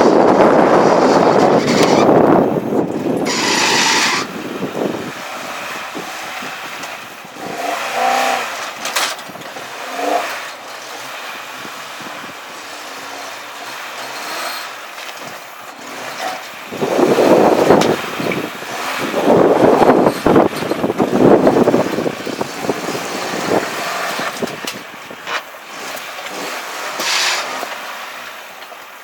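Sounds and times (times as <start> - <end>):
wind on microphone: 0.0 - 8.6, 11.2 - 12.8, 15.2 - 25.3
off-road vehicle engine: 0.0 - 29.0.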